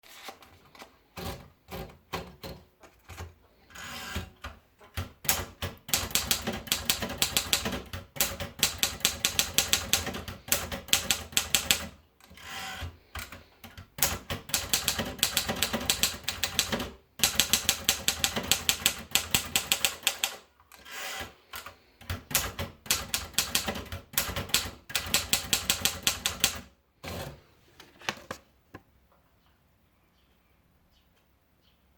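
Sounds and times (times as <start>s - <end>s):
typewriter key strikes: 5.0s - 11.9s, 14.0s - 20.4s.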